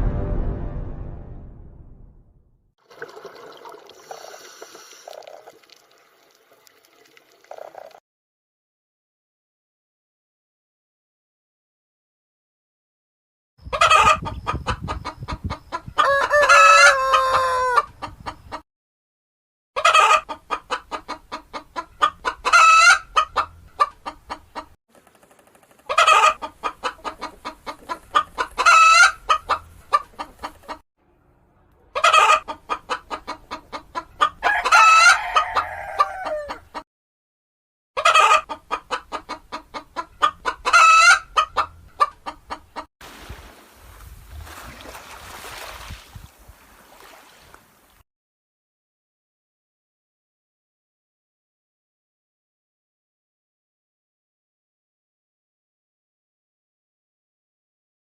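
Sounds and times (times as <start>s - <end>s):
hen clucking and cackling: 13.6s - 18.6s, 19.8s - 24.8s, 25.8s - 30.8s, 31.8s - 36.8s, 38.0s - 42.9s.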